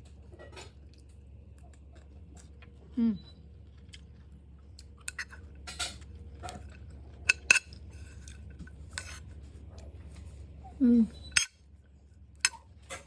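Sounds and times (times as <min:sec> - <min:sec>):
utensils and dishes clinking: 0:05.0 - 0:09.3.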